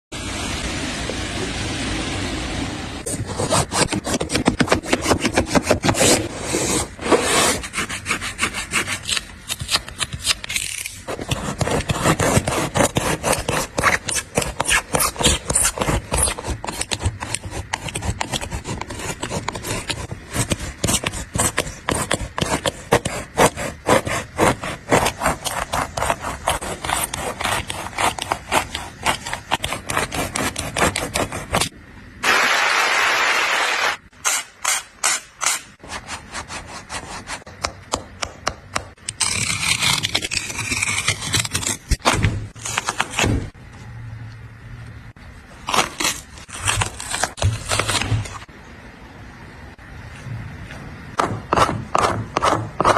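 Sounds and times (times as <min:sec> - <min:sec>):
blade sawing through sneaker: 0:03.1 - 0:09.4, 0:11.1 - 0:31.7.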